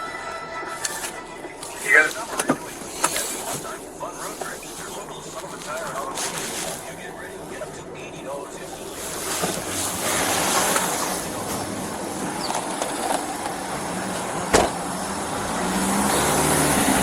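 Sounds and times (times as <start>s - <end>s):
car road and engine noise: 0.0s - 17.0s
sharp knock: 14.5s - 14.8s.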